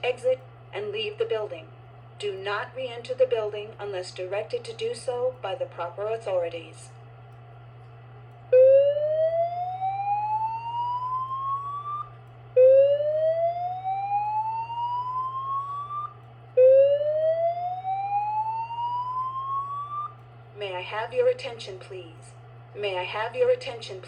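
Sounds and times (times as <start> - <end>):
steady low hum: 0.0 - 24.0
fire alarm whoop tone: 8.5 - 20.2.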